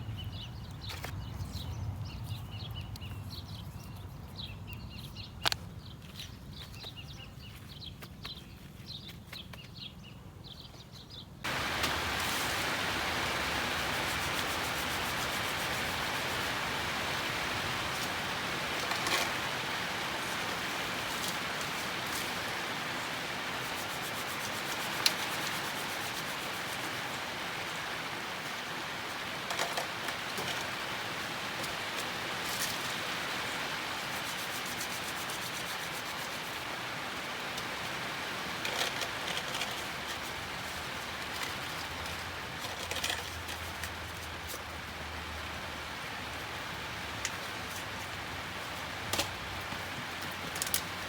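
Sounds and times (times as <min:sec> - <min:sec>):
outdoor hiss: 0:11.4 - 0:51.0
rubbing and scraping: 0:11.5 - 0:19.6, 0:23.4 - 0:26.9, 0:34.1 - 0:36.6.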